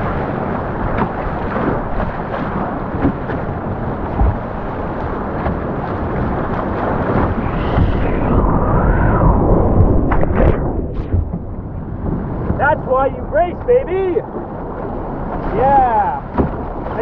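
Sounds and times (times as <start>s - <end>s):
whitewater rushing: 15.4s - 17.0s.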